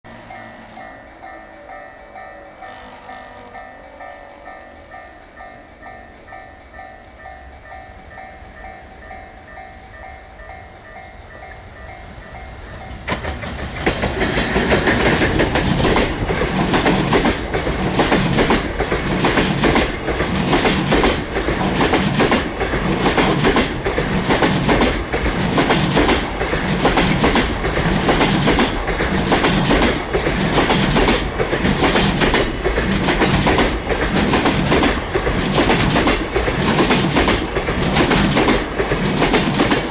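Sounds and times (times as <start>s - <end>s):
electric locomotive passing: 0.1s - 39.9s
train wheels clattering over rail joints: 12.7s - 39.9s.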